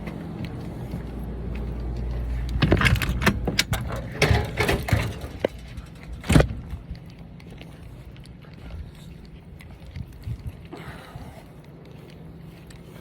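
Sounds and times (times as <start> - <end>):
light clicks and clattering: 1.6 - 10.5.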